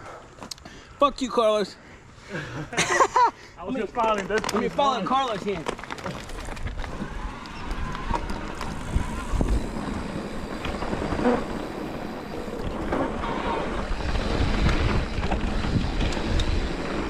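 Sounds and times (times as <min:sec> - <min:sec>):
bike tyres rolling on dirt: 0:03.7 - 0:17.0
bike knocking and rattling: 0:03.8 - 0:17.0
wind on microphone: 0:06.5 - 0:17.0.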